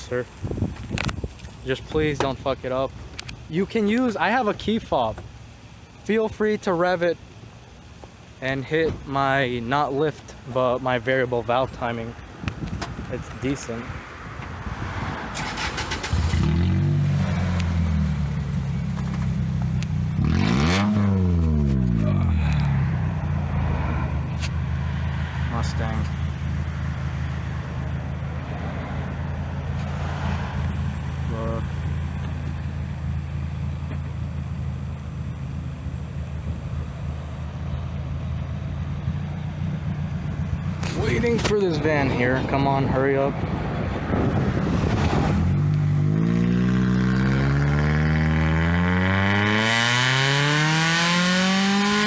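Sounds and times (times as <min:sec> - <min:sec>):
loud car engine idling and revving: 0:00.0 - 0:52.0
car engine cranking: 0:15.3 - 0:22.8.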